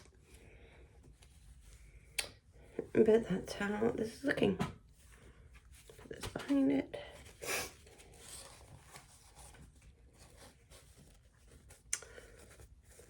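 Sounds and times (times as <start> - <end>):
fabric rustling and rubbing: 7.3 - 13.0.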